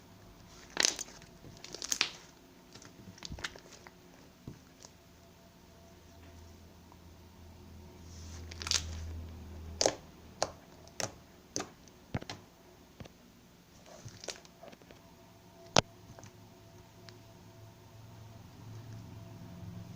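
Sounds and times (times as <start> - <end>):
slime popping and clicking: 9.8 - 12.4.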